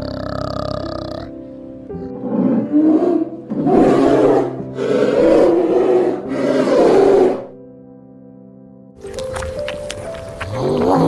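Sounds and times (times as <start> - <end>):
large animal roaring: 2.0 - 7.6, 10.5 - 11.0.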